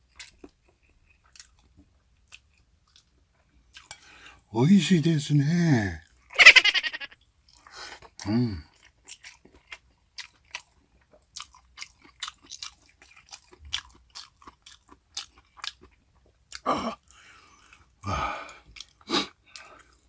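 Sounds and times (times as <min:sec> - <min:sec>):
person chewing food: 0:00.0 - 0:04.2, 0:07.4 - 0:20.0.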